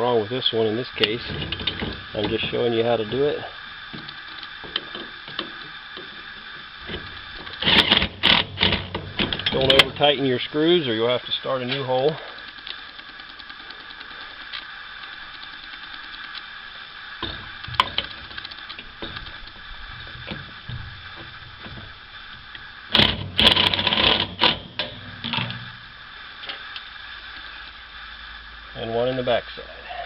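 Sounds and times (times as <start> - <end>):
faint steady hum: 0.0 - 30.0
clicks and taps of parts: 3.9 - 10.0, 12.4 - 16.5, 17.2 - 25.8
screwdriver spinning screw: 4.1 - 10.0, 12.5 - 16.6, 22.6 - 25.7.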